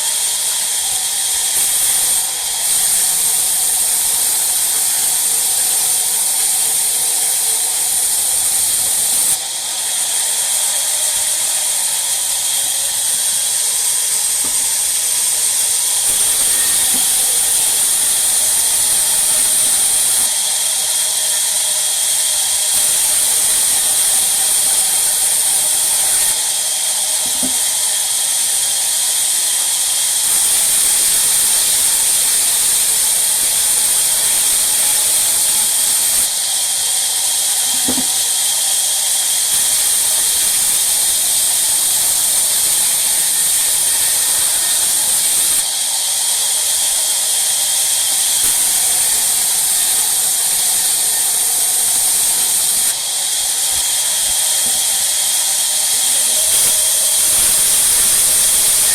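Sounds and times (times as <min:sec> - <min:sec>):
sawmill saw cutting wood: 0:00.0 - 0:58.9
faint knock: 0:37.8 - 0:38.1.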